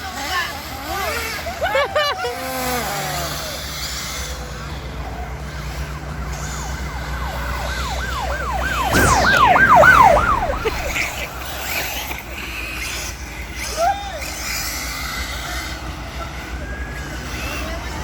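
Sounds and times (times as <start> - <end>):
low traffic rumble: 3.8 - 14.3
emergency siren yelping: 5.9 - 11.8.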